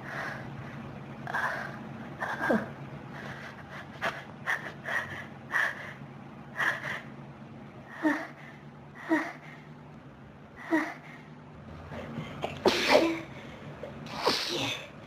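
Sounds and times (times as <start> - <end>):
person sneezing: 12.4 - 13.3, 14.1 - 14.9.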